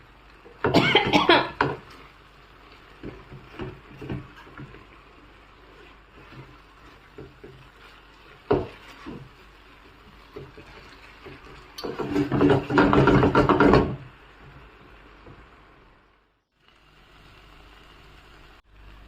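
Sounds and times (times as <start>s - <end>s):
spoon knocking on a pot: 11.8s - 14.0s.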